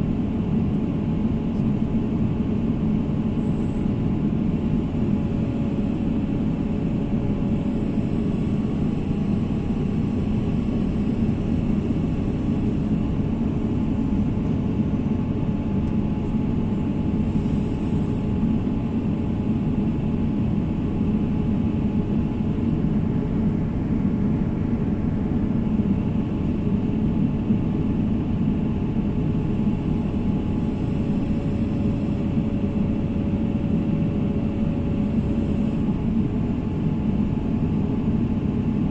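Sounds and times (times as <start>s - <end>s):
faint steady whine: 0.0s - 38.9s
excavator diesel engine running: 0.1s - 38.9s.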